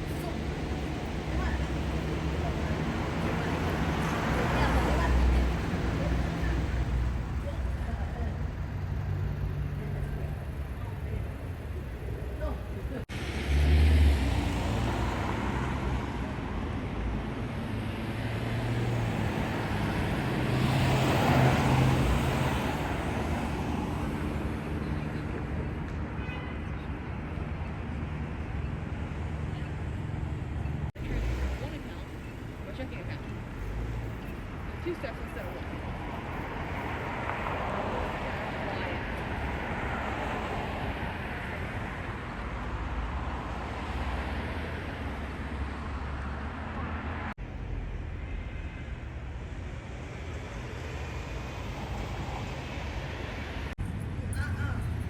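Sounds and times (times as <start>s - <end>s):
vehicle passing: 0.0s - 25.2s
traffic rumble: 0.0s - 55.0s.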